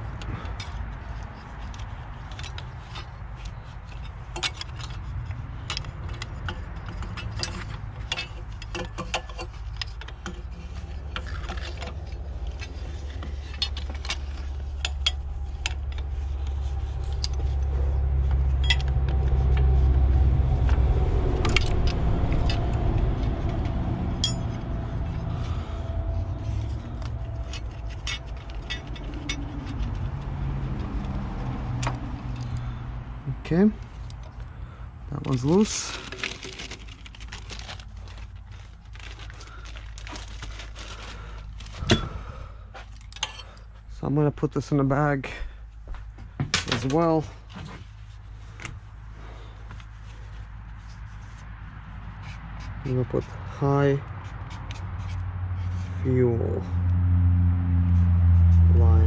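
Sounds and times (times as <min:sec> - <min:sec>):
metal tools clinking on engine: 0:00.0 - 0:17.7, 0:18.4 - 0:19.2, 0:24.2 - 0:24.8, 0:25.6 - 0:30.2, 0:35.1 - 0:38.3, 0:41.4 - 0:43.8
low rumble: 0:03.9 - 0:42.7.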